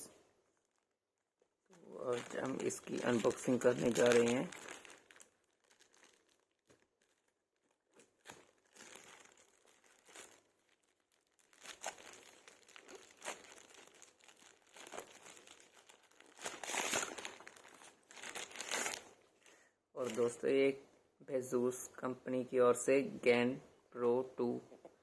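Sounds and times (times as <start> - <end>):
packaging crinkling and rustling: 0.4 - 20.4.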